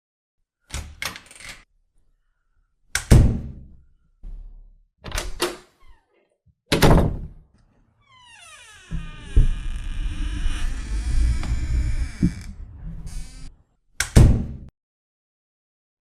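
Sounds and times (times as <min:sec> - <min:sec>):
door latch clicks: 0:05.0 - 0:05.6
door thuds: 0:06.7 - 0:07.4, 0:08.8 - 0:10.0.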